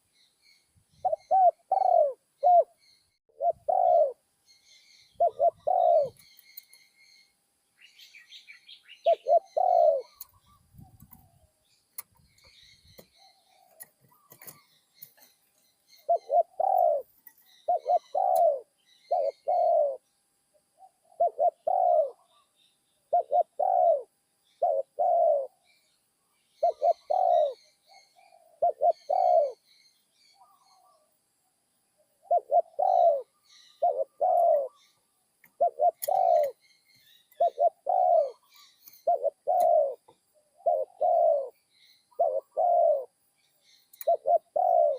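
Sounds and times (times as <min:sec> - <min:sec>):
small birds chirping faintly: 0:00.0 - 0:44.9
dove cooing: 0:00.9 - 0:04.2, 0:05.1 - 0:06.4, 0:08.8 - 0:11.4, 0:12.4 - 0:15.3, 0:15.9 - 0:20.0, 0:20.8 - 0:22.5, 0:23.1 - 0:25.6, 0:26.6 - 0:29.7, 0:32.2 - 0:43.2, 0:44.0 - 0:44.9.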